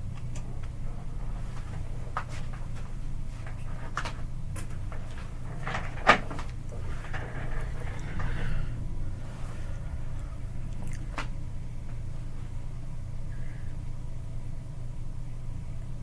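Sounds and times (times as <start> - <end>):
hot air station blowing: 6.6 - 10.7.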